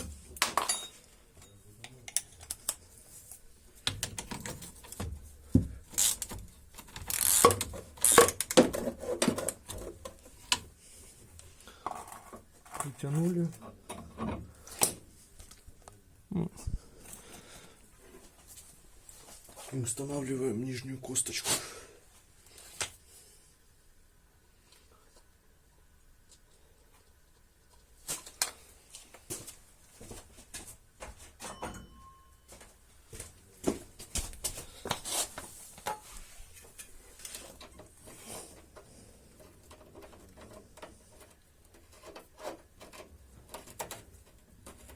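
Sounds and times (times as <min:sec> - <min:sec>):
wrench clicking and scraping: 0:05.9 - 0:08.5.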